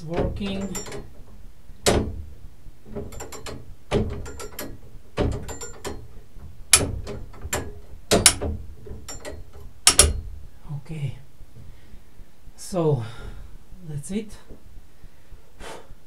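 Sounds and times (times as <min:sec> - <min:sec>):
clock ratchet clicking: 0:00.5 - 0:01.2, 0:03.0 - 0:10.2.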